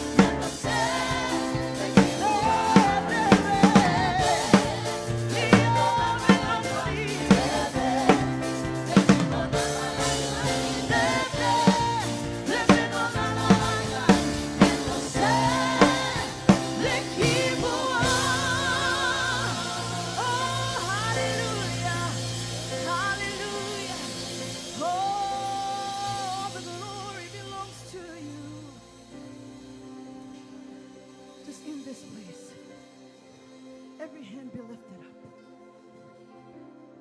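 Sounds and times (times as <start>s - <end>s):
drum kit beat: 0.0s - 27.9s
people singing: 0.0s - 29.0s
worship band playing: 0.0s - 37.0s.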